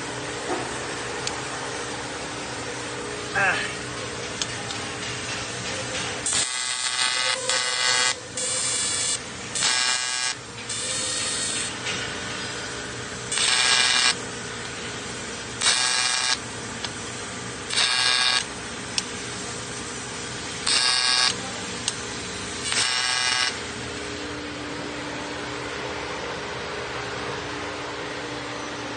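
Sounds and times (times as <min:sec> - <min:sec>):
steady machine hum: 0:00.0 - 0:28.9
welding arc buzzing: 0:06.2 - 0:11.8, 0:12.4 - 0:24.5.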